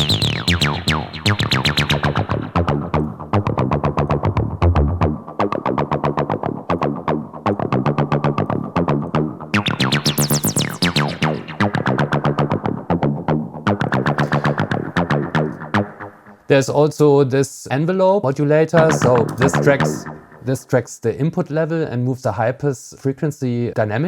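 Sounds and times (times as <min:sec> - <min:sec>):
distorted acid synth bassline: 0:00.0 - 0:16.4, 0:18.8 - 0:20.5.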